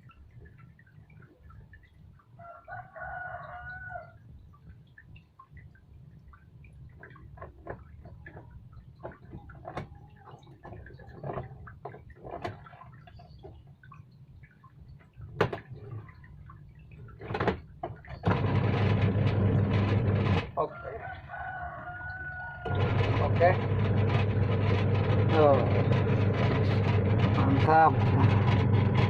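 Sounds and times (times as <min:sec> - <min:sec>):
washing machine humming and rushing: 0:06.3 - 0:13.6, 0:14.4 - 0:29.0
clicks and knocks of handling: 0:07.0 - 0:13.6.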